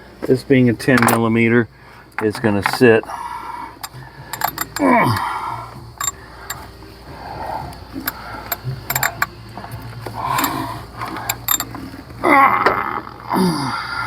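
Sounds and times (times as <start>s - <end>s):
metal clinks: 1.0s - 1.3s, 3.8s - 5.2s, 6.0s - 6.7s, 8.0s - 9.4s, 10.3s - 11.9s
ratchet wrench clicking: 3.8s - 5.2s, 6.0s - 6.7s, 8.0s - 9.3s, 10.3s - 11.8s.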